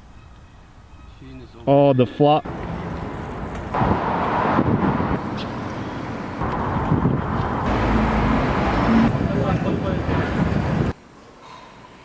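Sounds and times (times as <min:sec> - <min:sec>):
traffic: 0:02.4 - 0:11.6
wind buffeting microphone: 0:02.5 - 0:11.0.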